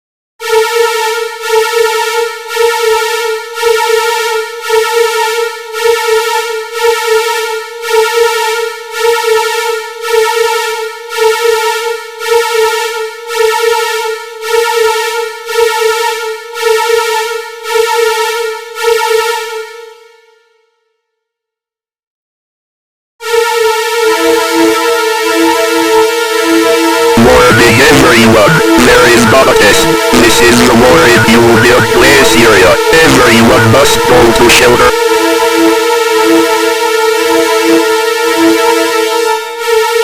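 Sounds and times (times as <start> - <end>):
buzzy electronic alarm tone: 23.3 - 40.0.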